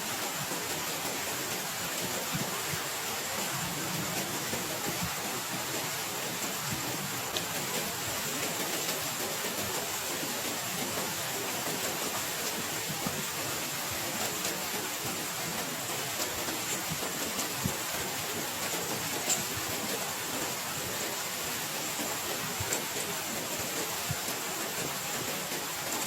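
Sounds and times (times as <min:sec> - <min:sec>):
heavy rain falling: 0:00.0 - 0:26.0.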